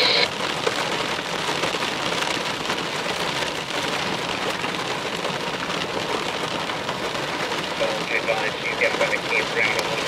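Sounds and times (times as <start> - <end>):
rain falling on a vehicle: 0.0 - 10.0.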